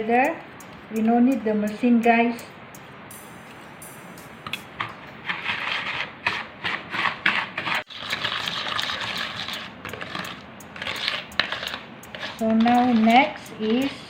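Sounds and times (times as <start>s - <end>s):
utensil scraping and beating bowl: 4.2s - 14.0s.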